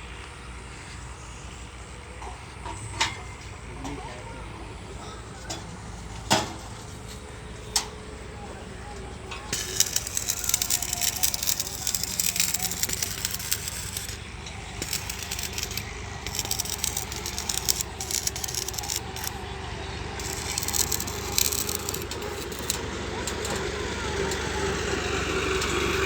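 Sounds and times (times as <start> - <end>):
scraping on metal gate: 9.4 - 19.4.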